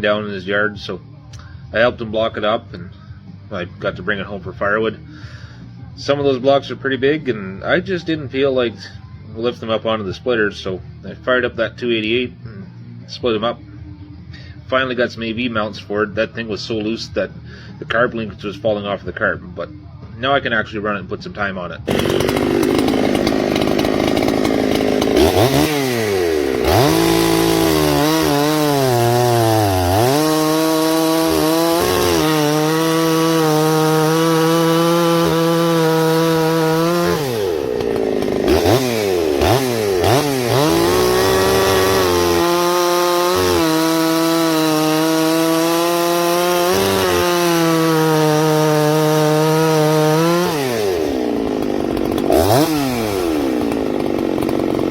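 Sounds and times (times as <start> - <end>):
chainsaw cutting wood: 21.9 - 54.9.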